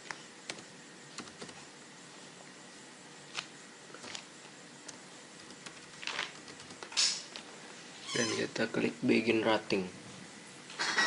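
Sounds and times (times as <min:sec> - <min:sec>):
faint steady hiss: 0:00.0 - 0:11.0
keyboard and mouse clicks: 0:01.2 - 0:01.6, 0:04.8 - 0:07.4.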